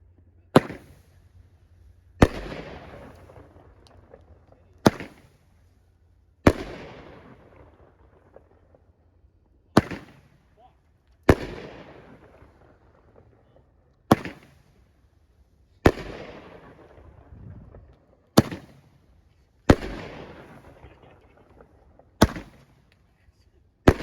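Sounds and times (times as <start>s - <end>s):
fireworks bangs: 0.5s - 1.3s, 2.2s - 5.6s, 6.5s - 8.6s, 9.8s - 10.6s, 11.2s - 13.3s, 14.1s - 14.9s, 15.8s - 23.2s.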